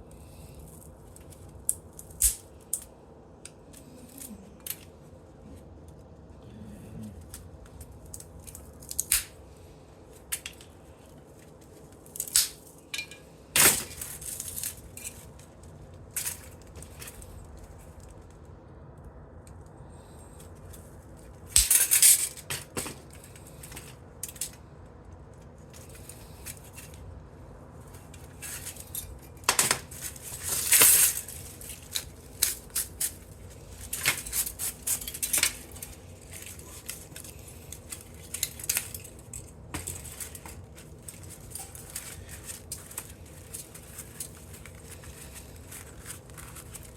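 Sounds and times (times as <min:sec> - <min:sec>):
scrap metal clinking and clattering: 0:12.1 - 0:17.2, 0:27.8 - 0:46.9.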